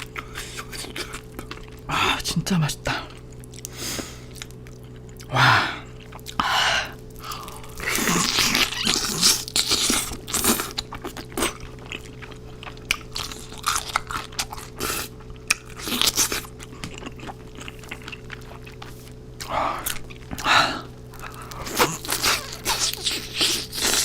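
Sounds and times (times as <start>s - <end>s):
soft chewing clicks: 0.0s - 1.8s, 3.1s - 5.3s, 5.9s - 6.4s, 10.1s - 20.5s
crunching fried chicken: 7.0s - 24.0s.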